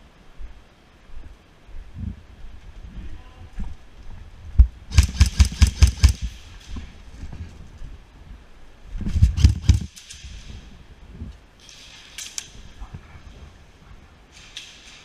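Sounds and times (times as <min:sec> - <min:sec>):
airsoft gun rapid shots: 0:04.9 - 0:06.5, 0:09.3 - 0:10.2.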